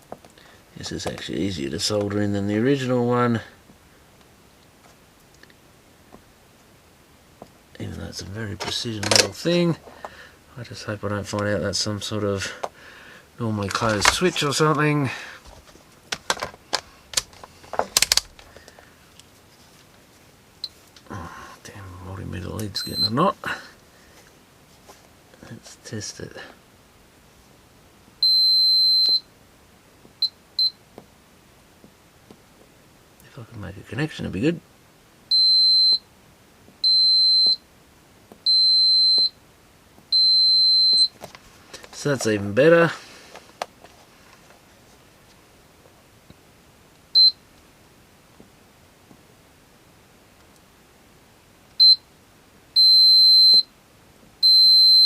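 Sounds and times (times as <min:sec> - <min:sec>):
multimeter beeping: 0:22.8 - 0:23.2, 0:28.2 - 0:29.3, 0:35.3 - 0:36.1, 0:36.8 - 0:37.6, 0:38.5 - 0:39.4, 0:40.1 - 0:41.1, 0:47.2 - 0:47.4, 0:51.8 - 0:52.0, 0:52.8 - 0:53.7, 0:54.4 - 0:55.0.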